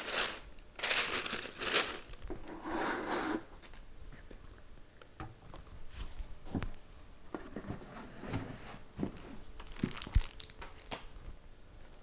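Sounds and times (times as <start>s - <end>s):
rustling and handling noises: 0.0s - 2.7s, 3.5s - 12.0s.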